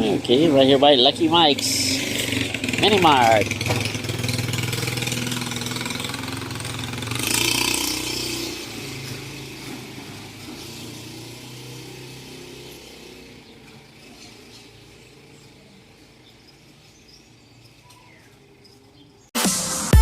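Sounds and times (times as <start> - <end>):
vehicle engine running: 0.0 - 18.9.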